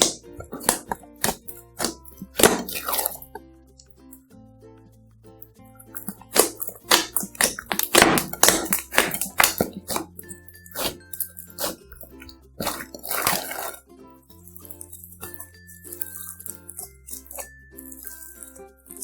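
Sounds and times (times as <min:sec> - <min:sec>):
slime squishing by hand: 0:00.0 - 0:03.4, 0:05.8 - 0:13.8, 0:14.4 - 0:19.0
light background music: 0:00.0 - 0:19.0.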